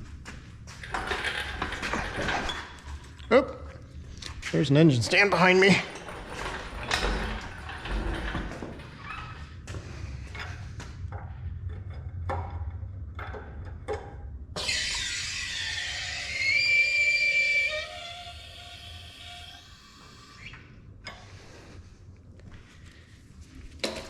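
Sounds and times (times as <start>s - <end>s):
metal scraping squeal: 14.6s - 20.8s.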